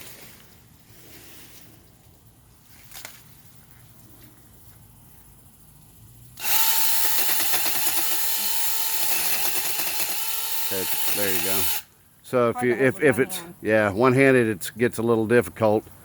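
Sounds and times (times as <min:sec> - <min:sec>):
mini chainsaw cutting branch: 0:06.4 - 0:11.9.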